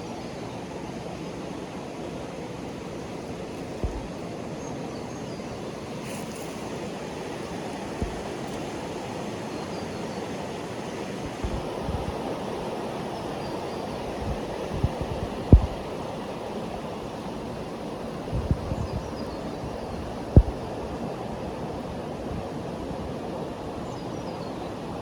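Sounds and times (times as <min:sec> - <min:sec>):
creek water rushing: 0:00.0 - 0:25.0
dull low thumps: 0:03.8 - 0:04.1, 0:08.0 - 0:08.3, 0:15.5 - 0:15.8, 0:20.4 - 0:20.6.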